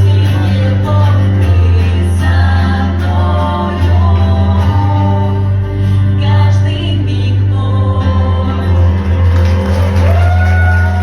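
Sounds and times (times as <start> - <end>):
deep steady bass: 0.0 - 11.0.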